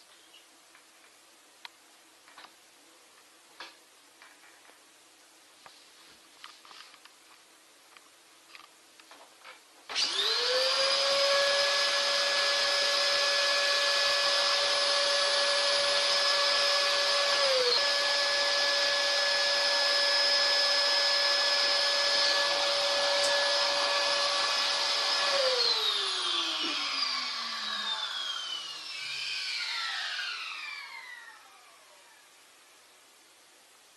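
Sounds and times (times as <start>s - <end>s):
vacuum cleaner motor whine: 9.9s - 32.8s.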